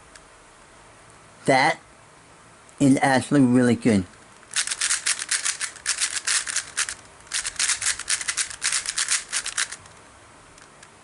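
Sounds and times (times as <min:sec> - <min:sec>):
puzzle cube clicking as turned: 0:04.1 - 0:09.9.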